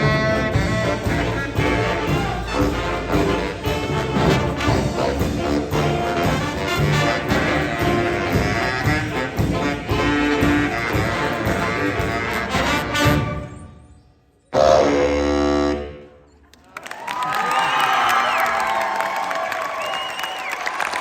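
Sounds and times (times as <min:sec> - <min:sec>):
jazz combo playing swing: 0:00.0 - 0:13.5.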